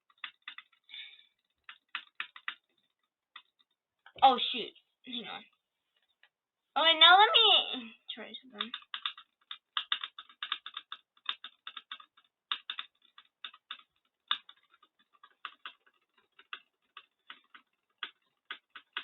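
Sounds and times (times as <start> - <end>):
computer keyboard key presses: 0.1 - 0.8, 1.4 - 2.7, 8.6 - 19.0.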